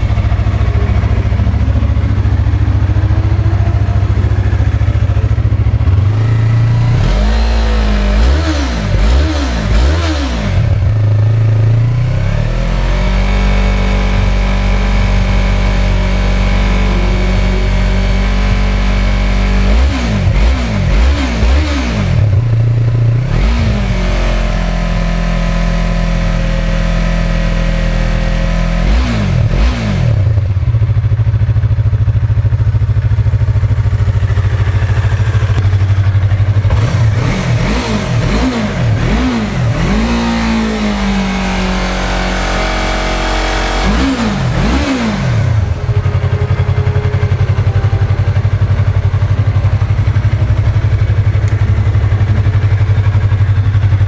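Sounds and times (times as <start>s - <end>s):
motorcycle throttle blips: 0.0s - 12.0s, 29.5s - 54.0s
motorcycle engine idling: 0.0s - 28.8s, 29.4s - 54.0s.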